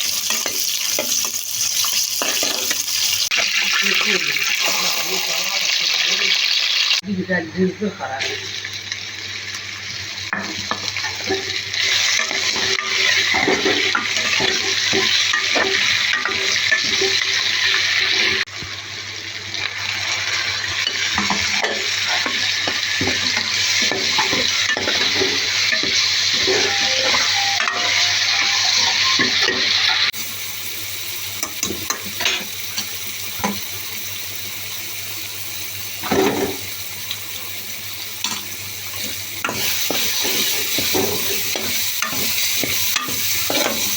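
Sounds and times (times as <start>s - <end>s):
food sizzling in a pan: 0.0s - 43.9s
spoon scraping and knocking pan: 0.1s - 2.8s, 10.3s - 17.5s, 20.8s - 30.0s, 38.2s - 43.9s.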